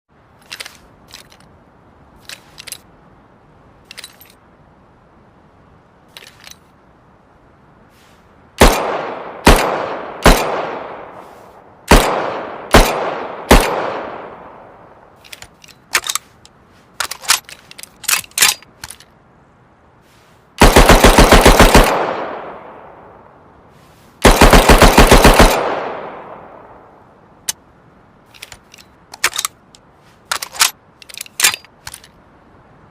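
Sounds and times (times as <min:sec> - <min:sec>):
full-auto gunfire bursts: 0:08.6 - 0:10.9, 0:11.9 - 0:14.2, 0:20.6 - 0:22.5, 0:24.2 - 0:26.3
gunshots with echo: 0:08.6 - 0:11.2, 0:11.9 - 0:14.6.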